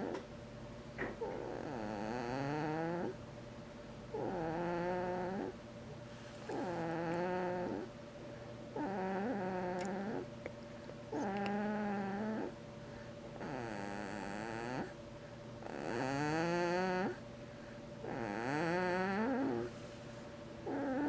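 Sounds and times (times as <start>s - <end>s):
quiet breathing: 12.8s - 13.2s, 17.4s - 17.9s.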